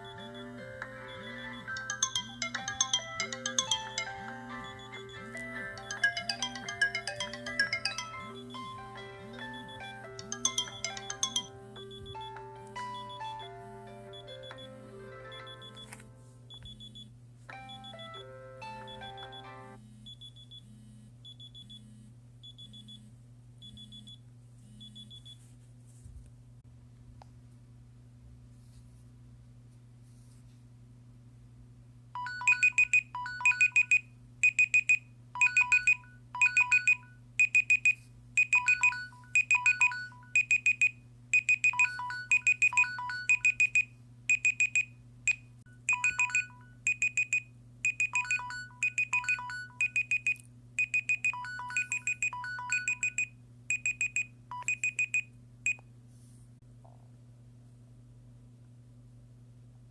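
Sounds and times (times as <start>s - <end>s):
phone alarm beeping melody: 0.0s - 19.8s, 32.2s - 44.8s, 45.7s - 55.2s
faint low hum: 0.0s - 59.9s.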